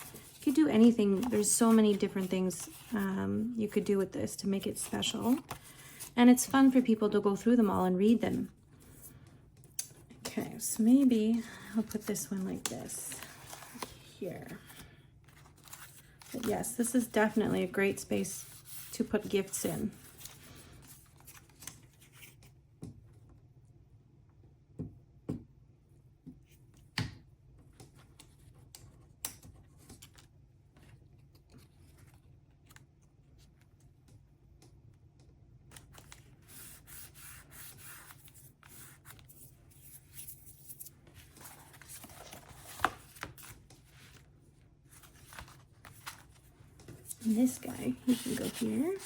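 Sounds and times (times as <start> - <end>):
paper rustling and rubbing: 0.0 - 6.9, 10.3 - 22.4, 35.8 - 49.0.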